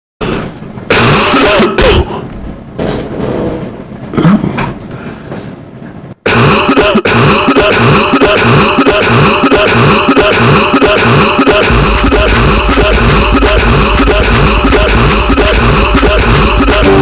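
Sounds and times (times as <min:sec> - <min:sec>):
rhythmic cough-like sounds: 0:00.8 - 0:02.3, 0:04.1 - 0:04.8, 0:06.2 - 0:17.0
low bass tone: 0:10.4 - 0:17.0.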